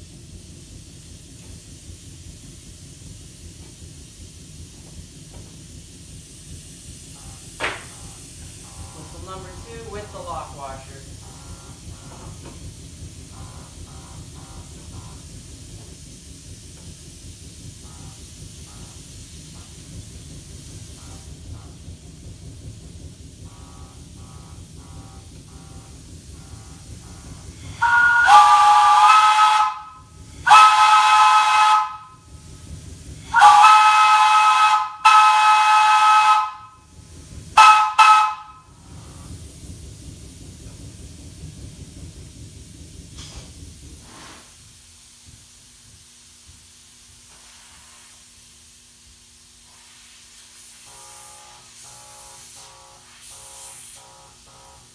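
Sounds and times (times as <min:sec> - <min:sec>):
steady steam hiss: 0:00.0 - 0:54.9
steam whistle blasts: 0:27.7 - 0:32.3, 0:33.3 - 0:36.9, 0:37.5 - 0:38.8, 0:50.7 - 0:54.9.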